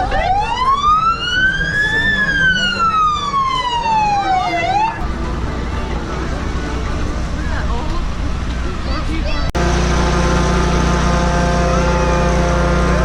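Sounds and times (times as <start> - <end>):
emergency siren wailing: 0.0 - 7.2, 10.2 - 13.0.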